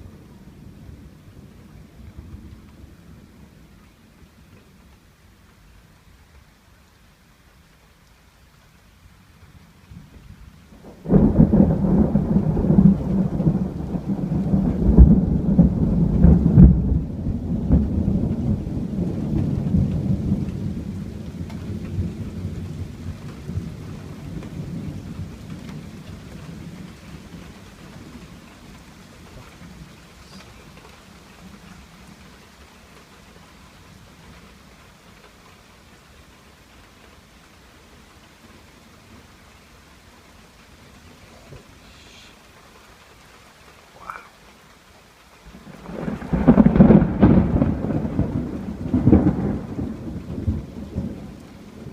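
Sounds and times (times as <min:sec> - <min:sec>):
steady rain: 0:00.0 - 0:51.9
thunder rumbling: 0:09.9 - 0:34.8, 0:45.4 - 0:51.9.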